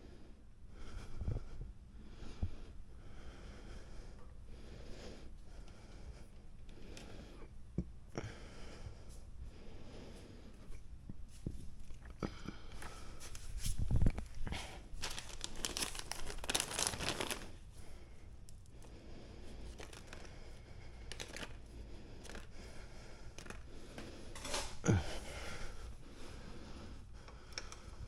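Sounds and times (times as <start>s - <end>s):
plastic wiring rustling and crinkling: 11.3s - 26.0s.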